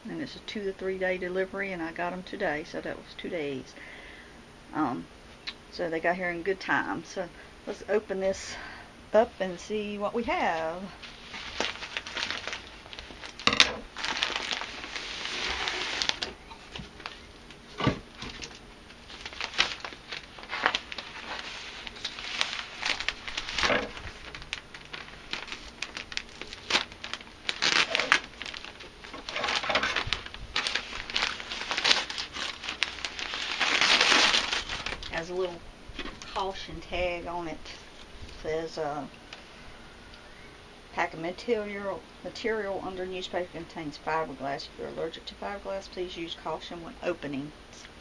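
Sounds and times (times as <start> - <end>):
paper and packing crinkling: 10.9 - 37.1.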